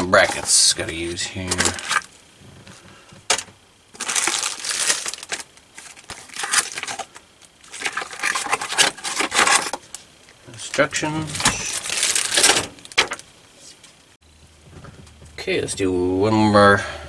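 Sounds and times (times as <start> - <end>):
packaging crinkling and rustling: 0.2 - 9.8, 11.3 - 13.2.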